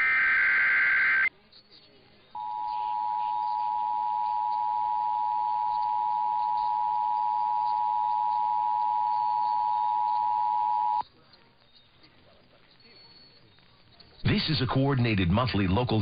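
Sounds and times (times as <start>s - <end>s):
two-tone alert signal: 2.4s - 11.0s.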